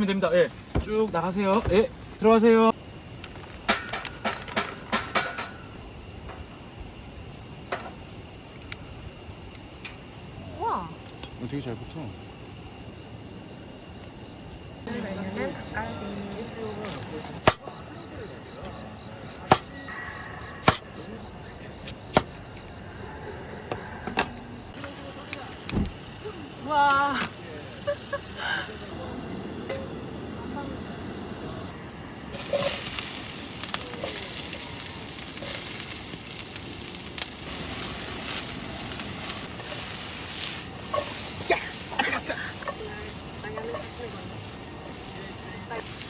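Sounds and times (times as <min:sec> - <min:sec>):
camp cookware clinking: 0:03.6 - 0:05.7, 0:32.3 - 0:46.0
faint steady hiss: 0:24.8 - 0:46.0.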